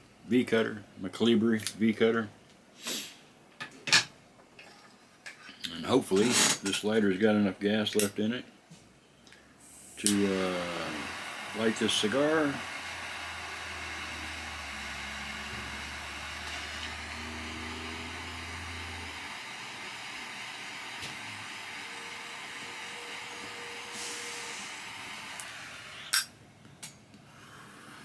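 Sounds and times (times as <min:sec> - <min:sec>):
torch lighter hissing: 0:09.6 - 0:26.3.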